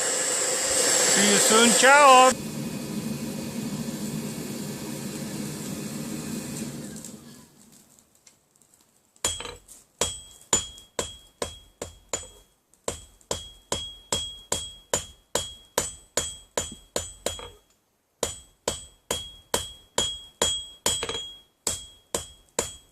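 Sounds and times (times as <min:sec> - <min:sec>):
hammer striking iron on anvil: 0:09.2 - 0:17.6, 0:18.2 - 0:22.9.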